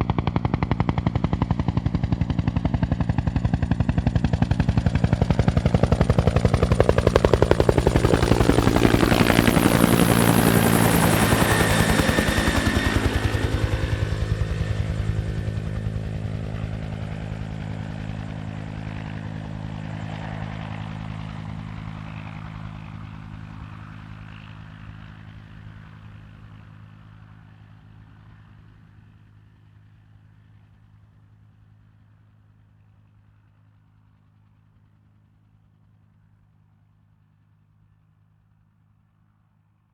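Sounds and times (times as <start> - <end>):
helicopter rotor thudding: 0.1 - 16.0.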